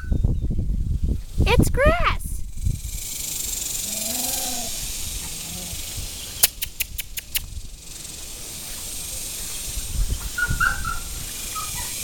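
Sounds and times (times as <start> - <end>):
steady high hiss: 2.5 - 12.0
sharp clicks: 6.4 - 7.5.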